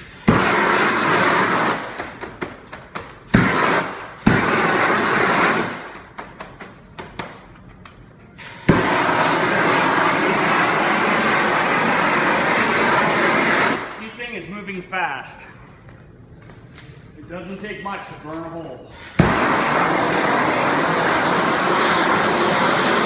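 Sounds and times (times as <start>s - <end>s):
heat gun flame blowing: 0.0s - 2.2s, 3.2s - 6.0s, 8.4s - 14.1s, 18.9s - 23.0s.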